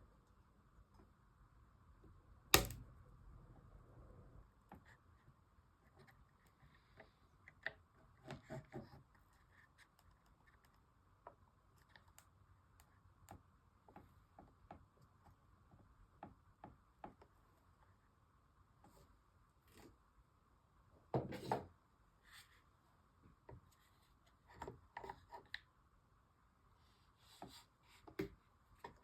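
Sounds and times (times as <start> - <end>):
faint small clicks and knocks: 9.8 - 15.4.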